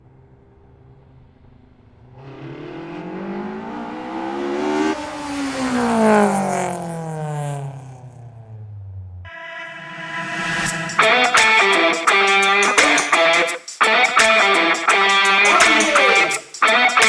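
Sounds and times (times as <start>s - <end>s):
car engine revving: 0.0s - 11.2s.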